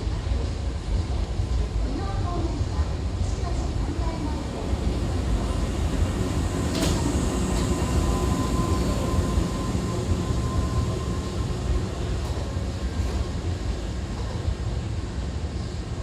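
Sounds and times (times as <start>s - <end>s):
electric train rolling: 4.2s - 16.0s.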